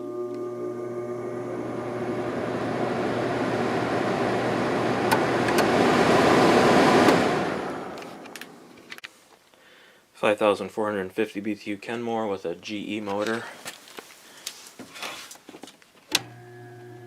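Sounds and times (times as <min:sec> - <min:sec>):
air conditioner fan air rush: 0:01.4 - 0:08.0.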